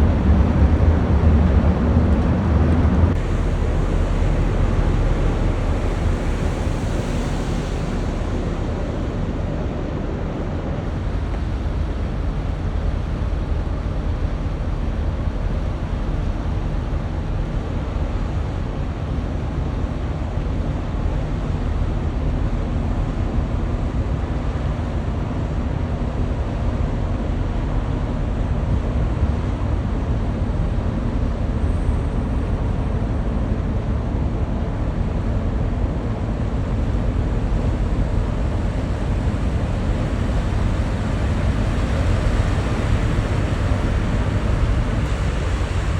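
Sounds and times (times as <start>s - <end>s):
ship engine deep rumble: 0.0s - 45.9s
wind and water hiss: 0.0s - 45.9s.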